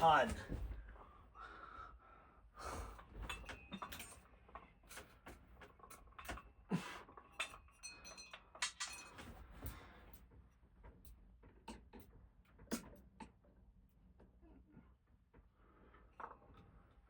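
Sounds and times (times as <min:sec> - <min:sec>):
light knocks and metallic clinks: 0:03.1 - 0:10.3.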